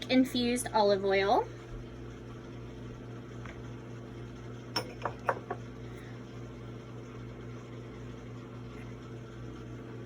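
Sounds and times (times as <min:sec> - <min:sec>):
steady low hum: 0:00.0 - 0:10.0
spoon clinking against bowl: 0:04.8 - 0:05.6.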